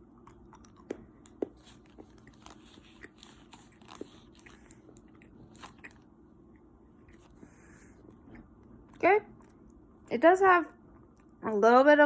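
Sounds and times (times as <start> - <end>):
chewing chocolate crunches: 0.0 - 6.1.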